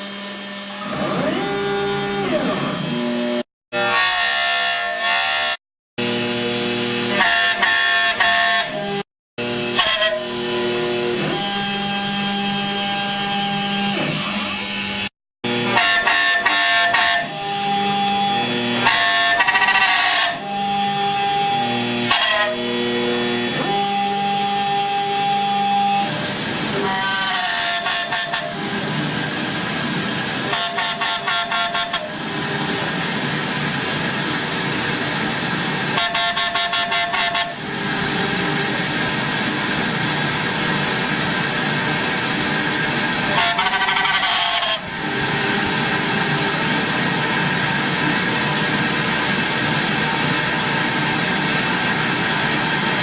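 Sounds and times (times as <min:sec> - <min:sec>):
gliding motor whines: 0:00.0 - 0:03.4
router running noise: 0:00.0 - 0:04.1, 0:06.0 - 0:53.0.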